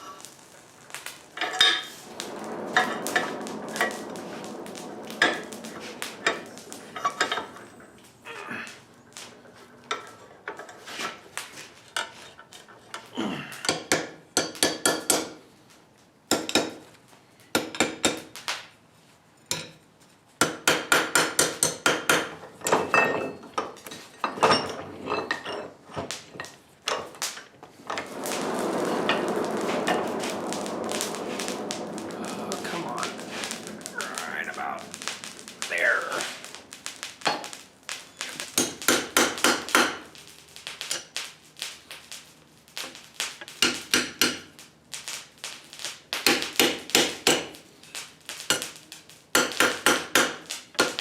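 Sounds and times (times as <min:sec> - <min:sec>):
steady rushing noise: 0:00.0 - 0:12.0, 0:26.2 - 0:40.6.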